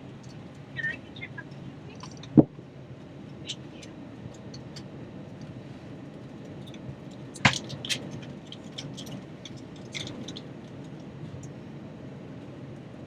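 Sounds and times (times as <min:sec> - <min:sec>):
airliner cabin hum: 0:00.0 - 0:13.0.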